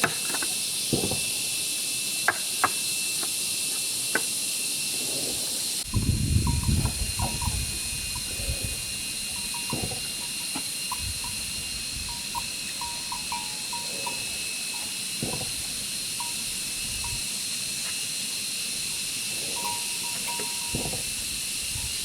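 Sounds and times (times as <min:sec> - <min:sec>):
insects droning: 0:00.0 - 0:22.0
dull knocks: 0:15.2 - 0:15.7, 0:20.4 - 0:21.1.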